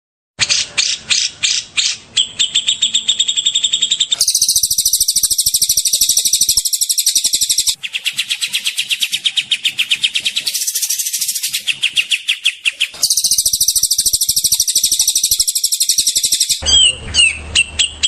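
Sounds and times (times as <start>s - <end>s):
songbird fast high trills: 2.2s - 18.0s
songbird sharp high notes: 4.0s - 12.1s, 12.8s - 18.0s.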